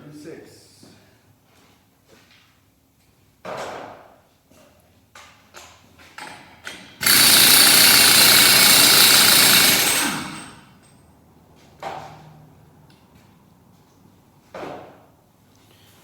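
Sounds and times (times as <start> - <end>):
pneumatic impact wrench hammering: 6.2 - 10.8.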